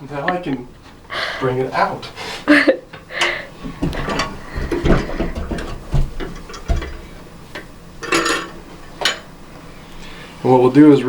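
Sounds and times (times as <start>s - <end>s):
sink basin knocking on countertop: 3.8s - 7.0s.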